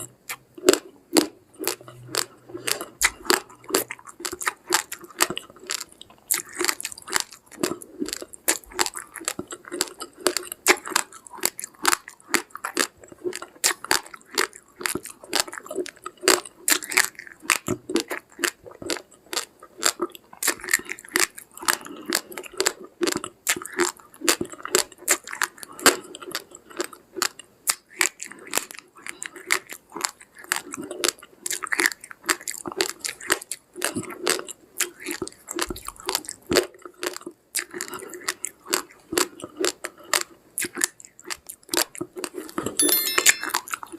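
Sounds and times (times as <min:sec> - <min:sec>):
person crunching raw rice: 0:00.0 - 0:25.4.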